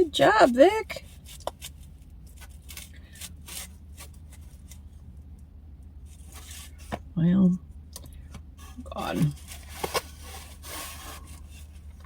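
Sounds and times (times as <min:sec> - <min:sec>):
knife scraping styrofoam container: 0:08.6 - 0:12.0.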